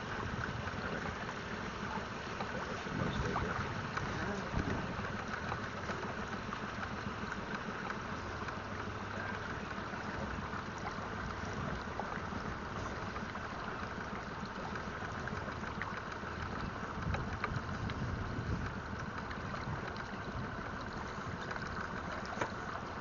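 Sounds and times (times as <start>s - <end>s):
water moving around boat: 0.0s - 23.0s
faint ticks: 0.3s - 23.0s
wind noise: 17.0s - 18.8s.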